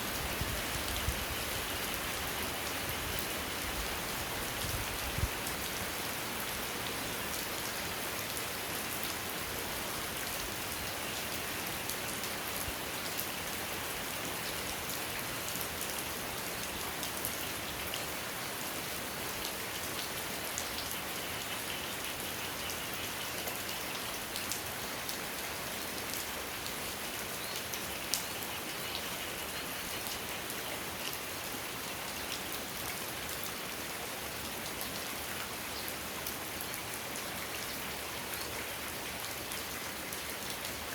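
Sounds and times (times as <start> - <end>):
raindrops ticking on a surface: 19.4 - 31.3.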